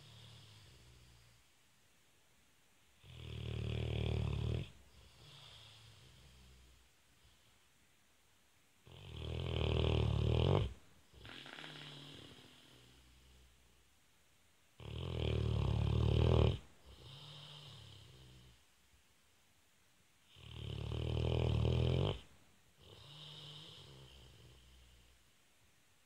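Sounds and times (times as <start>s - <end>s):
pet snoring: 3.0s - 6.7s, 8.8s - 13.0s, 14.8s - 18.6s, 20.3s - 25.0s.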